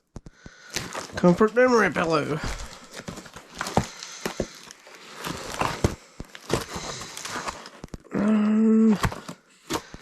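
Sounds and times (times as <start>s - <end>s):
cardboard box being handled: 0.8s - 7.9s
held vocal hum: 8.1s - 9.2s.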